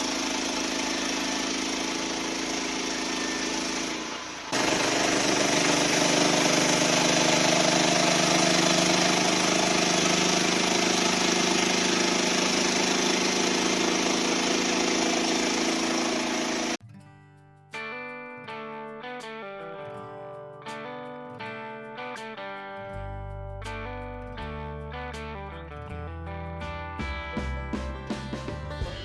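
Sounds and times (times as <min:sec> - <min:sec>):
portable sawmill engine running: 0:00.0 - 0:16.8.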